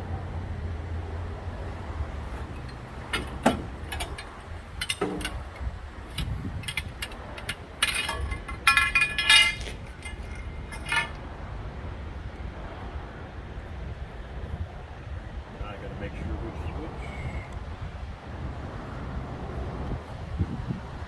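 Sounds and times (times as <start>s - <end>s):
low outdoor rumble: 0.0s - 19.8s
ringing metallic clatter: 2.2s - 11.2s
metal parts clinking and knocking: 2.3s - 11.2s.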